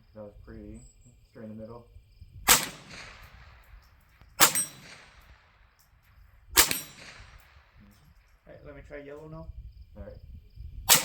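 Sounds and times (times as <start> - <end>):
rifle shots with ringing tail: 2.5 - 8.4.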